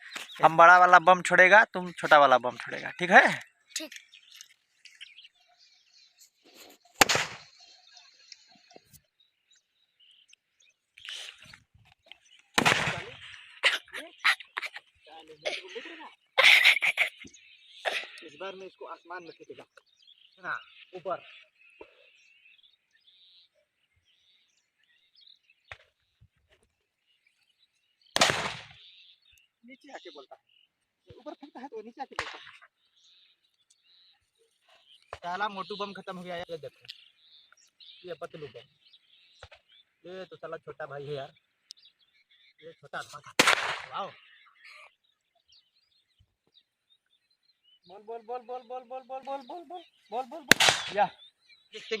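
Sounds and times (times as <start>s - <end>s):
faint bird chirps: 0.0s - 52.0s
firecracker bang: 7.0s - 7.5s, 12.6s - 13.2s, 28.2s - 28.8s, 43.4s - 44.0s, 50.5s - 51.0s.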